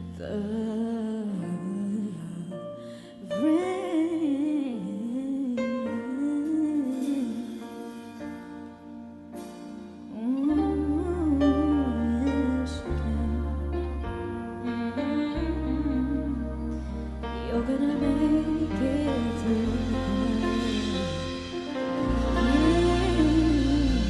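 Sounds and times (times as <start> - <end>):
woman singing pop ballad: 0.0 - 8.4, 9.6 - 24.0
soft instrumental accompaniment: 0.0 - 24.0
deep bass: 10.5 - 24.0.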